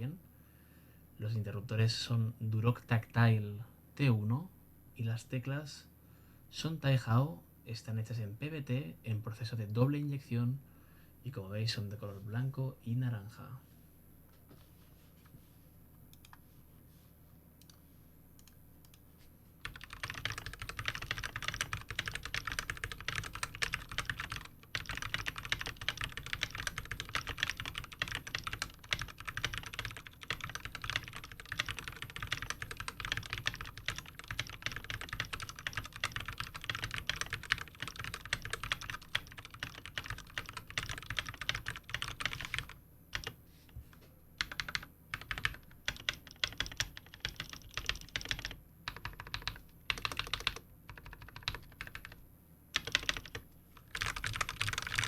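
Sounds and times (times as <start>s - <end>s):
fast typing on mechanical keyboard: 19.6s - 43.4s, 44.4s - 52.2s, 52.8s - 55.0s.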